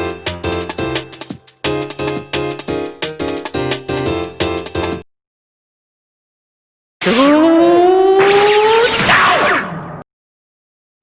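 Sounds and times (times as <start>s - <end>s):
electronic music with driving beat: 0.0s - 5.0s.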